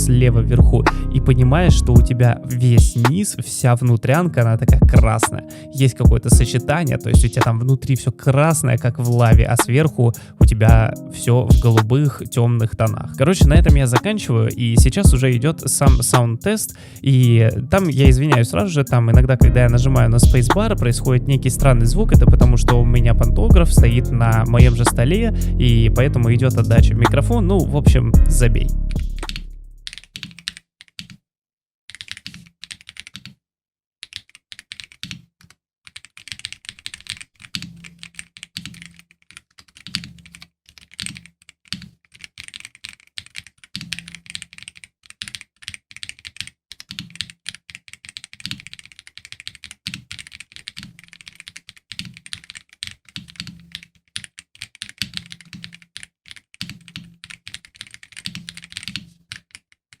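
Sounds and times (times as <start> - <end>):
mechanical keyboard typing: 2.0 - 21.1, 29.0 - 31.2, 31.9 - 33.4, 34.0 - 60.0.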